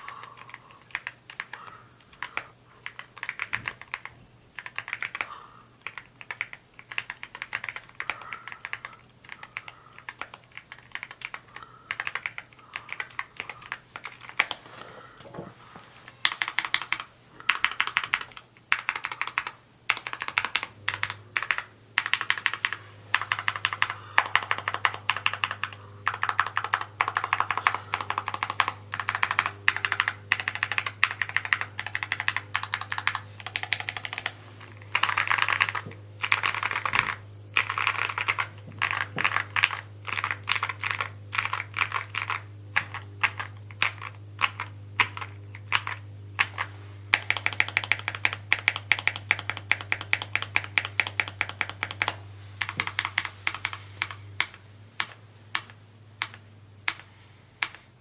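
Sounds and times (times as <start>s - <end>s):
mechanical keyboard typing: 0.0s - 14.6s, 16.2s - 57.8s.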